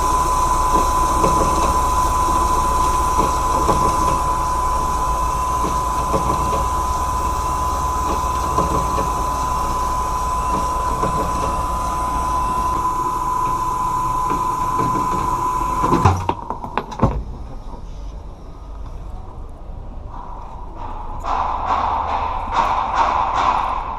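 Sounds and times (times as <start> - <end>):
band saw cutting metal: 0.0 - 16.1.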